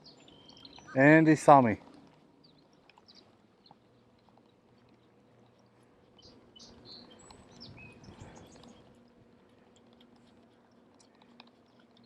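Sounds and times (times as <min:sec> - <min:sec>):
bird chirps: 0:00.0 - 0:01.6, 0:02.4 - 0:04.6, 0:05.4 - 0:09.0.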